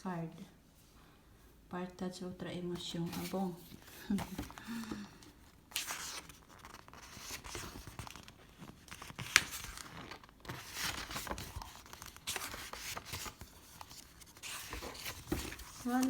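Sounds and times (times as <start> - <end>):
paper rustling and tearing: 5.7 - 16.0.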